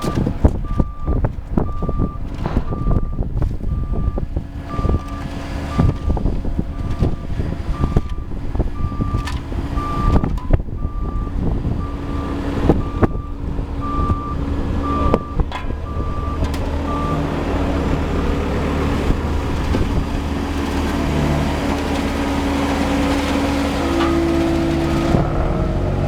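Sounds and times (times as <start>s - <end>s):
reversing alarm beeping: 0.0s - 19.2s
heavy diesel machinery running: 0.0s - 26.0s
sharp knocks: 2.4s - 3.4s.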